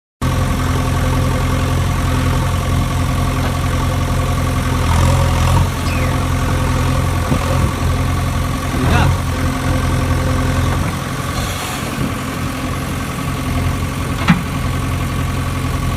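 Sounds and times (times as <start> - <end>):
engine idling: 0.2 - 15.9.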